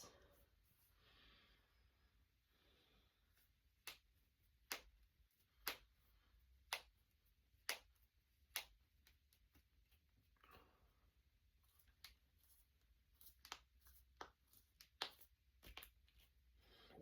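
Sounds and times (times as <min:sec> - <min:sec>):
knuckles cracking: 0:03.8 - 0:06.0, 0:06.6 - 0:07.0, 0:07.6 - 0:09.6, 0:13.2 - 0:16.3.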